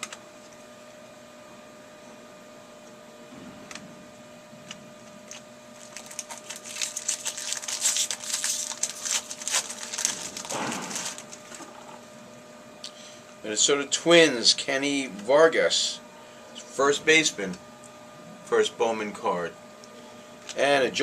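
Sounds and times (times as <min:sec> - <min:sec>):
wrapper rustling: 0:05.2 - 0:11.8.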